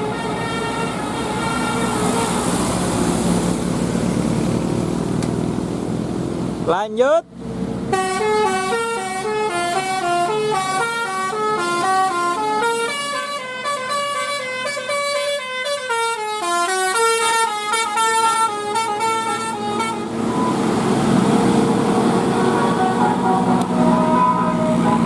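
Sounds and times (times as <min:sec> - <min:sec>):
musical air horn playing a tune: 0:07.9 - 0:20.5, 0:22.3 - 0:25.0.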